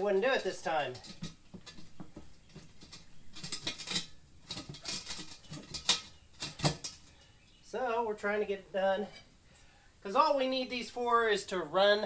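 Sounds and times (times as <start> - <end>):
tire tools clicking and scraping: 0.0 - 7.8.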